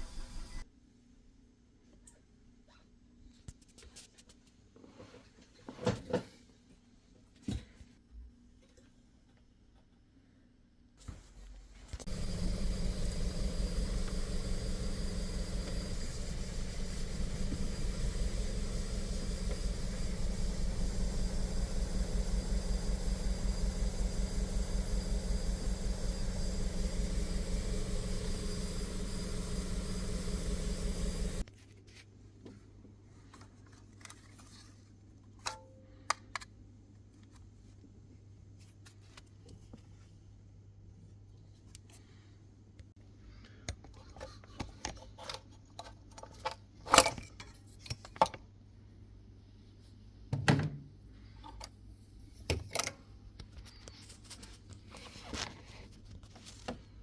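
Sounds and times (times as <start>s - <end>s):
car engine idling: 12.1s - 31.4s.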